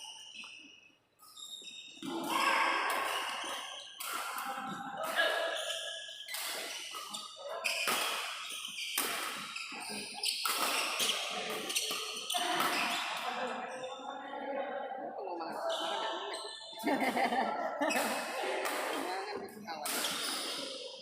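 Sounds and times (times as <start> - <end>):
voices in a hall: 0.0 - 21.0
rackets hitting shuttlecock: 2.0 - 13.4, 19.8 - 21.0.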